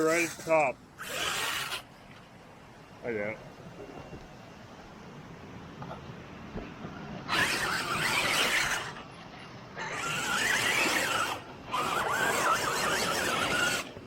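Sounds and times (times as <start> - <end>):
tires spinning on wet rock: 0.0 - 1.9, 7.2 - 9.1, 9.7 - 14.0
engine revving: 7.3 - 9.0, 9.8 - 14.0
wavering squeal: 7.3 - 14.0.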